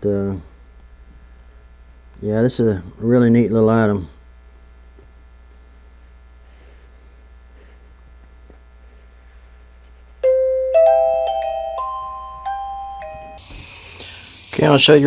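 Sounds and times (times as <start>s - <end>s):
faint low hum: 0.0s - 15.0s
doorbell chime melody: 10.2s - 13.6s.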